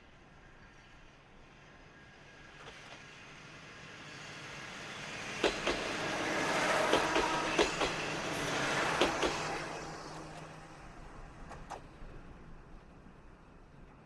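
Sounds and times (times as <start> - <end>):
diesel railcar passing: 0.2 - 14.0
wheels clicking over rail joints: 5.4 - 10.4.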